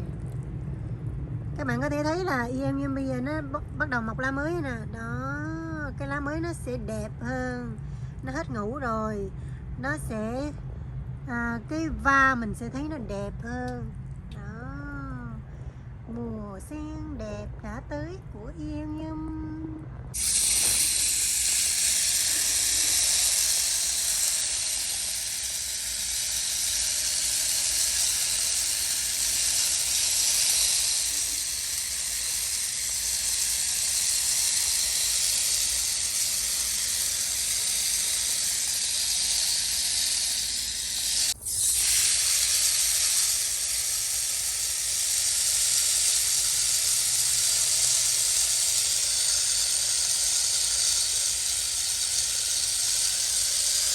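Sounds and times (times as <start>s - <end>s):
water spraying from nozzle: 20.2s - 53.9s.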